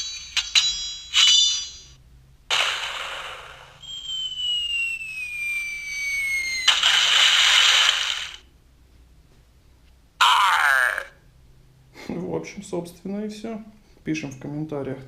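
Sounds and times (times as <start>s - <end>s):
toy cannon blast: 2.5s - 8.4s
whistle falling in pitch: 3.8s - 6.9s.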